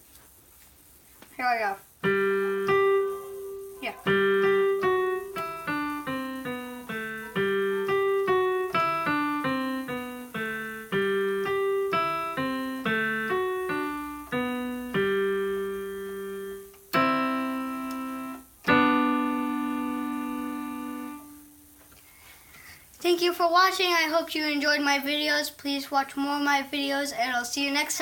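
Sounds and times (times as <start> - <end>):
electronic keyboard piano piece: 2.0 - 21.8.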